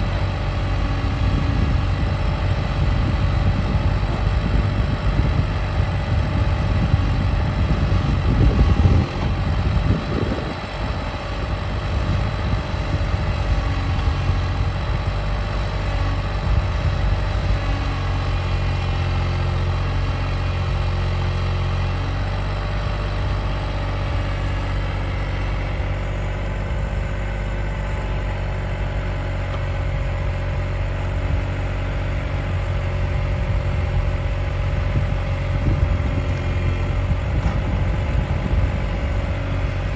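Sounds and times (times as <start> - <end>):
diesel excavator engine running: 0.0 - 39.9.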